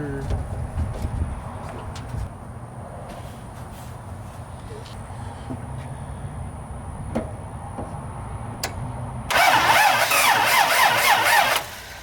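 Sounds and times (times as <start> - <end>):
starter motor cranking: 9.3 - 12.0.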